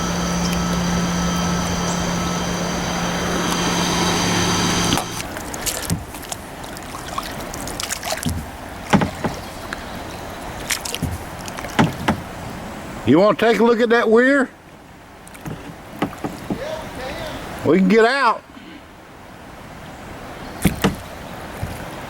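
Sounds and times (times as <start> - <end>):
hum with high whine: 0.0 - 5.3
paddle knocking against kayak: 0.0 - 6.4, 7.8 - 9.8, 10.6 - 12.4, 15.3 - 17.2, 20.6 - 21.9
paddle splashing water: 0.0 - 13.8, 14.6 - 17.9, 20.5 - 22.0
moving water wash: 0.0 - 18.4, 19.0 - 22.0.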